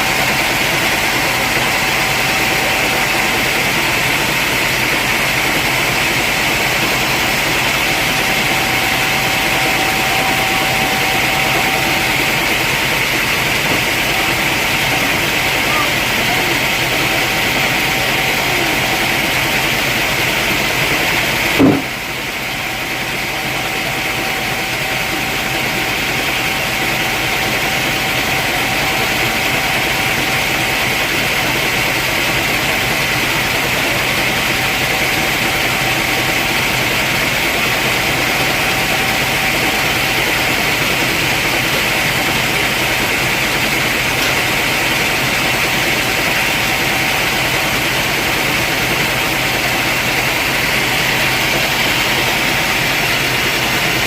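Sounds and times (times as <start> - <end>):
sawmill machinery drone: 0.0 - 54.0
thin steady whine: 0.0 - 54.0
sharp knock: 21.6 - 22.0.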